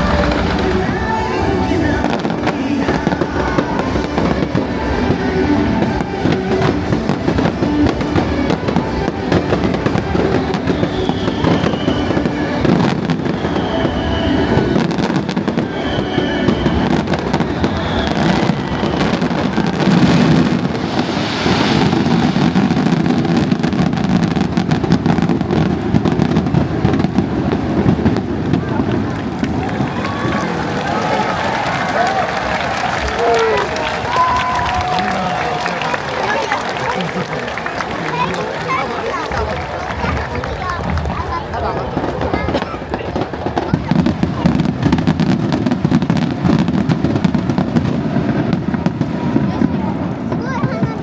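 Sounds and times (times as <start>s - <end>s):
music: 0.0s - 28.3s
fireworks bangs and crackling: 0.0s - 51.0s
firework falling whistles: 9.0s - 27.1s, 30.0s - 40.0s.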